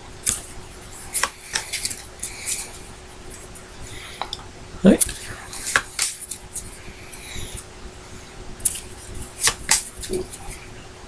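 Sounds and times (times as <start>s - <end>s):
cards rustling: 0.3s - 3.5s, 5.0s - 7.5s, 8.6s - 10.6s
card-on-card flicks: 5.7s - 6.4s, 9.4s - 10.2s.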